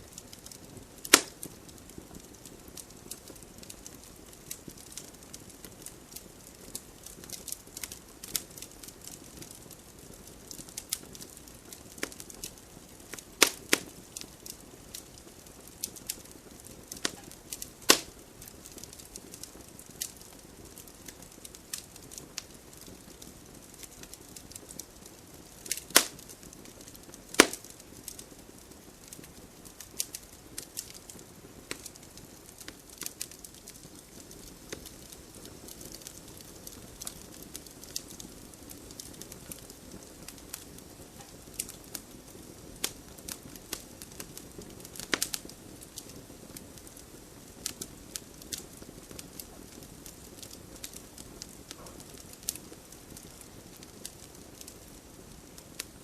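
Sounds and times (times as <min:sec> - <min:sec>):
campfire crackling: 0:00.0 - 0:56.0
wood snapping: 0:01.1 - 0:01.4, 0:17.9 - 0:18.1, 0:27.4 - 0:27.6.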